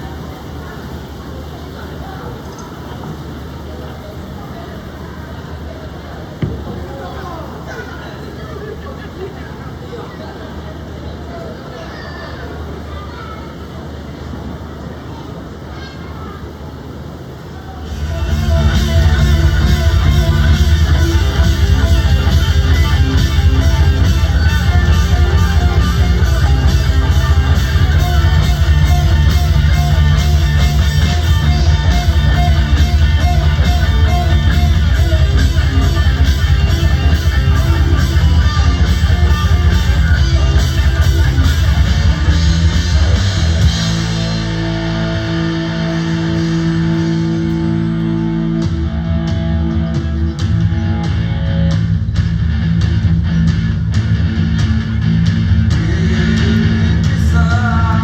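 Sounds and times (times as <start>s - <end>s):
bass guitar: 17.8s - 58.0s
distorted electric guitar: 17.8s - 58.0s
drum kit: 17.9s - 58.0s.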